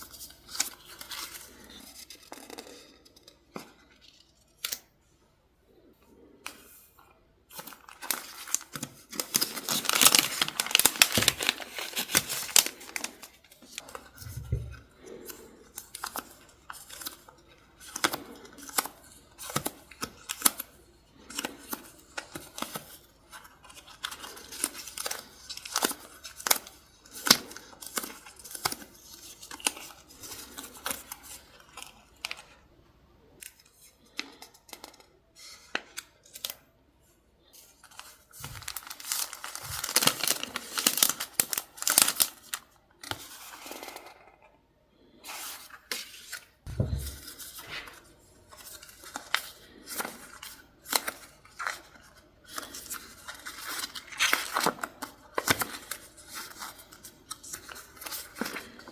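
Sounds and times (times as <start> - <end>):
paper rustling and crinkling: 0.0 - 4.8, 7.5 - 32.6, 37.5 - 44.5, 45.1 - 58.9
soft low thump: 46.7 - 47.3.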